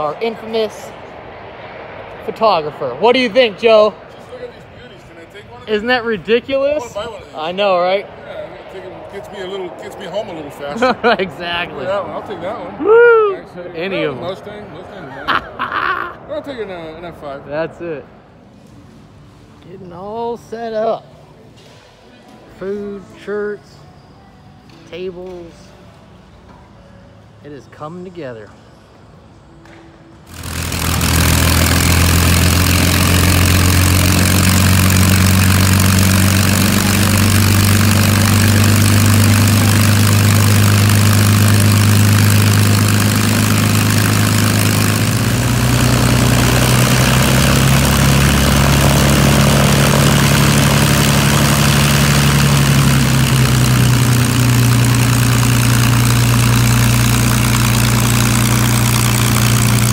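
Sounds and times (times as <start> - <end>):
propeller airplane engine: 0.0 - 12.6, 30.3 - 59.9.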